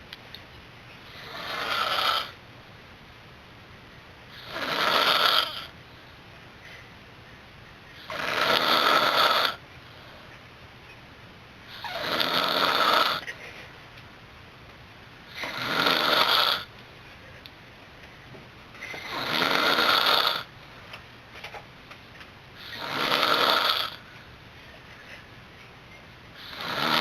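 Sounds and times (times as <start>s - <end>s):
person snoring: 1.1s - 2.4s, 4.4s - 5.7s, 8.0s - 9.6s, 11.7s - 13.2s, 15.3s - 16.7s, 19.0s - 20.5s, 22.6s - 24.0s, 26.4s - 27.0s.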